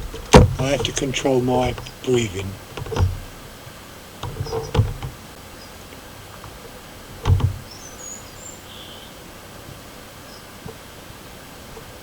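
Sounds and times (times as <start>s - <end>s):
dull knocks: 0.0s - 3.4s, 7.2s - 7.7s.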